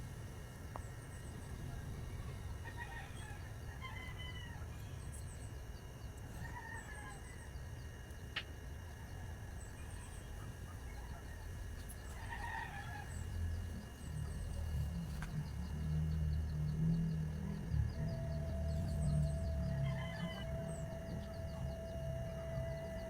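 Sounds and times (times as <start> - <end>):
small birds chirping: 9.1 - 23.0
steady low rumble: 10.9 - 23.0.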